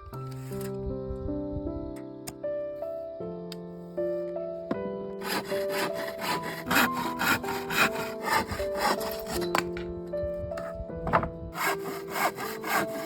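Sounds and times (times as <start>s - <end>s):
soft background music: 0.0s - 13.0s
hand saw cutting wood: 5.2s - 9.8s, 11.6s - 13.0s.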